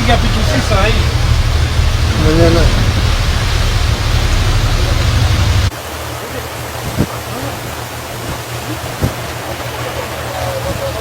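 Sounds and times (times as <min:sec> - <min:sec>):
heavy low rumble: 0:00.0 - 0:05.8
wind and water rushing: 0:00.0 - 0:11.0.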